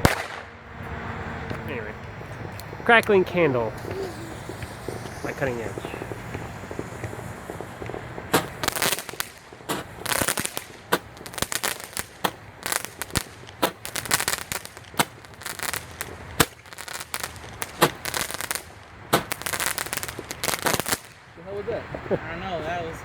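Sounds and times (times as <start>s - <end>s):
roman candle pops: 0.0s - 0.5s, 2.3s - 15.4s
bursts of crackling: 0.0s - 22.1s.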